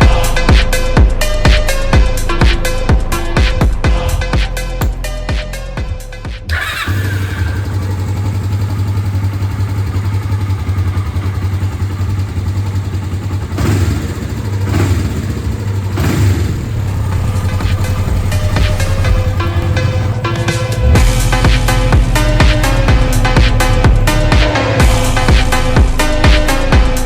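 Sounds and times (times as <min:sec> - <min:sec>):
held synth notes: 0:00.0 - 0:05.9, 0:15.6 - 0:26.2
kick drum beat: 0:00.0 - 0:06.5
motorcycle engine idling: 0:00.0 - 0:26.9
motorcycle engine revving: 0:00.0 - 0:27.0.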